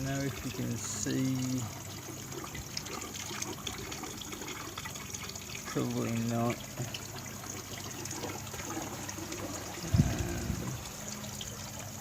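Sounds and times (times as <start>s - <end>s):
water trickling into pond: 0.0s - 12.0s
faint low hum: 4.4s - 11.8s.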